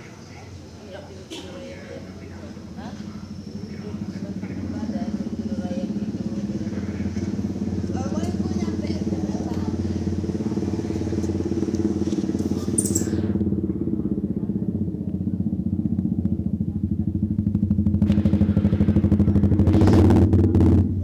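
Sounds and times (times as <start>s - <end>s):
vehicle engine throbbing: 2.2s - 21.0s.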